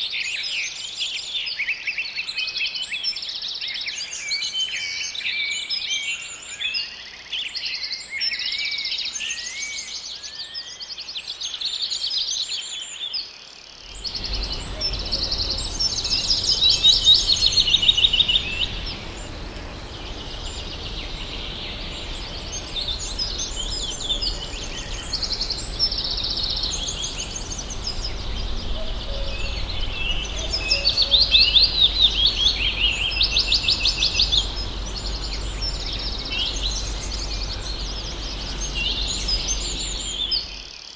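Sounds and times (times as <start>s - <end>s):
low rumble and hiss: 13.8s - 40.9s
birds singing and calling: 13.9s - 40.9s.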